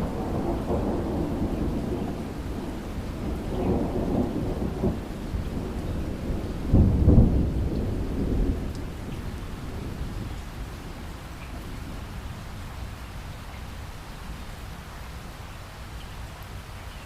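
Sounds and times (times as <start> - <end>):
thunder rumbling: 0.0 - 13.0
heavy rain: 0.0 - 17.0.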